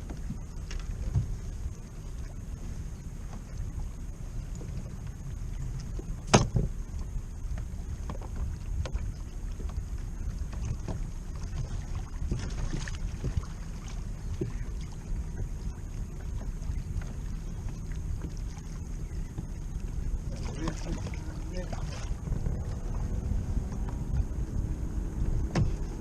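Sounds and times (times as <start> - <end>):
small water sounds: 0.0 - 26.0
wind noise on microphone: 0.0 - 26.0
gear tapping against hull: 4.6 - 13.5, 23.6 - 24.4, 25.2 - 26.0.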